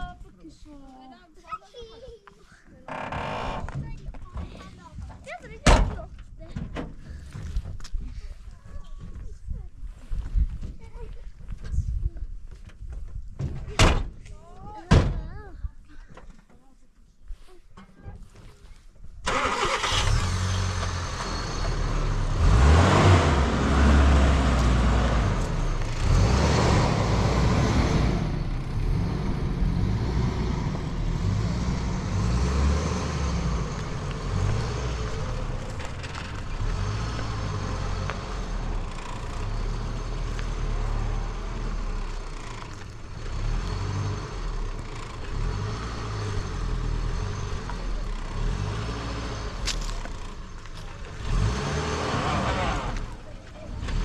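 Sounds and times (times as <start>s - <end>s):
vehicle engine starting and revving: 19.2s - 54.0s.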